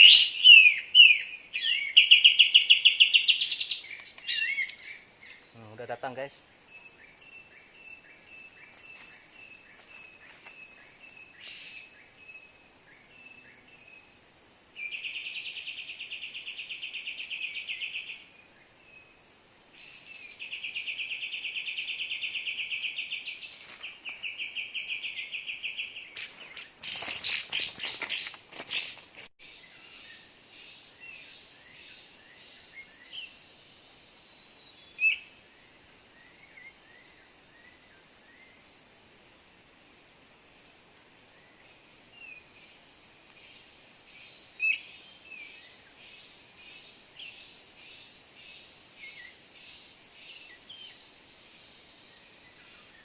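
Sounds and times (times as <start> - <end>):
bird chirps: 0.0 - 19.2, 19.8 - 33.4, 43.4 - 51.0
faint insect ticking: 0.0 - 53.0.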